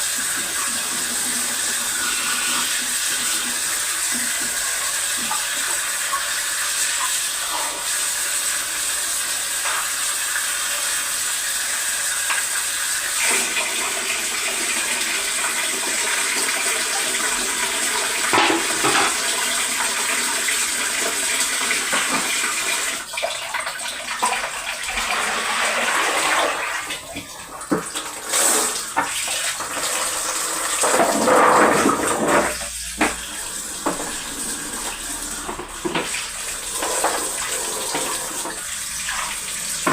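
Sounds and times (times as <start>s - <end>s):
things rinsed under water: 0.0s - 39.9s
tap running into sink: 16.4s - 20.0s, 21.0s - 23.0s, 26.9s - 39.9s.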